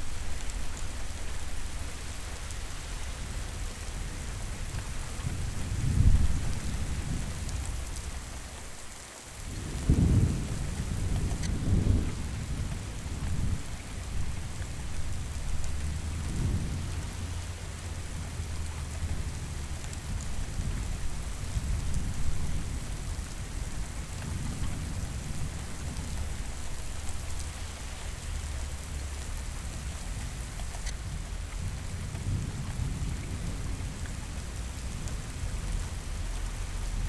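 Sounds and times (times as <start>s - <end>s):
steady rain hissing: 0.0s - 37.0s
low thunder rumbling: 3.2s - 8.3s, 9.4s - 37.0s.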